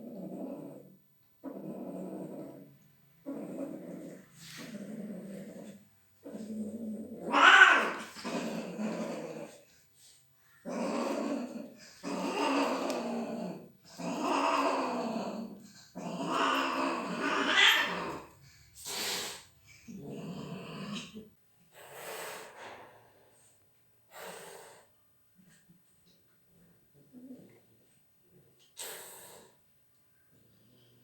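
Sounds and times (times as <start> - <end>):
cat growling and yowling: 3.2 - 9.7, 10.6 - 18.3.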